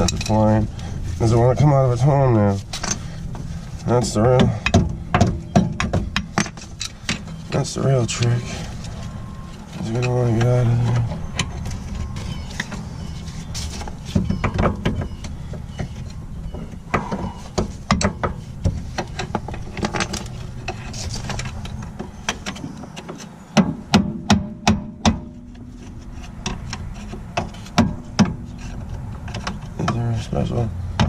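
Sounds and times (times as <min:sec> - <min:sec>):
metal tools clinking and scraping: 0:00.0 - 0:01.3, 0:02.6 - 0:04.7, 0:06.2 - 0:16.7, 0:17.3 - 0:23.4.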